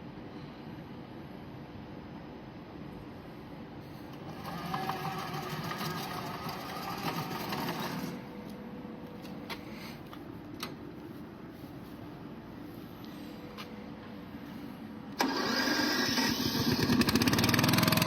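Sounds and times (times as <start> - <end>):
lawn mower motor whirring: 4.1 - 8.3, 15.2 - 18.0.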